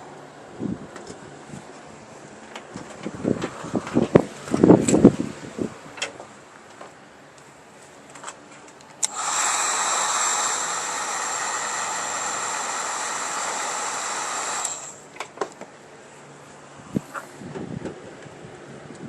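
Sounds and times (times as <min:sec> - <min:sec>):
heat gun switch click: 0:09.0 - 0:09.6
heat gun blower hiss and whine: 0:09.0 - 0:15.3.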